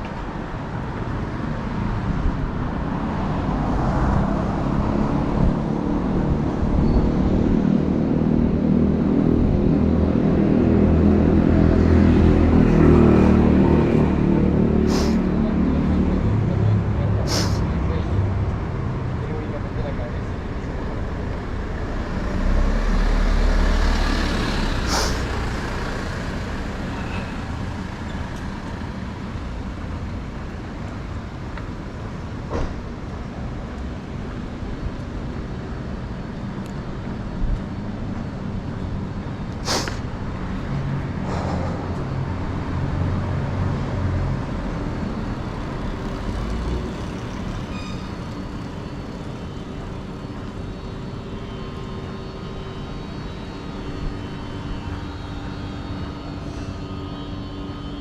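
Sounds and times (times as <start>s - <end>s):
traffic engine rumble: 0.0s - 58.0s
short sharp hisses or clicks: 14.9s - 15.2s, 17.3s - 17.6s, 24.9s - 25.3s, 39.6s - 40.0s
heavy vehicle passing: 20.4s - 29.7s, 39.6s - 54.2s.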